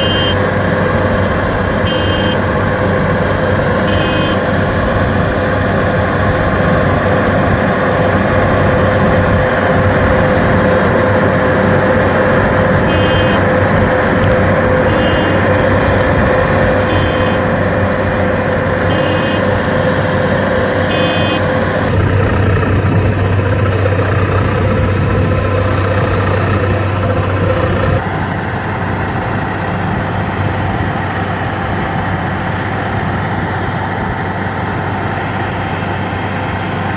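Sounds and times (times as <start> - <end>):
short high alarm beep: 0.0 - 0.4, 1.9 - 2.4, 3.9 - 4.4, 12.9 - 13.4, 14.9 - 15.5, 16.8 - 17.4, 18.9 - 19.5, 20.9 - 21.5
combine harvester running: 0.0 - 36.9.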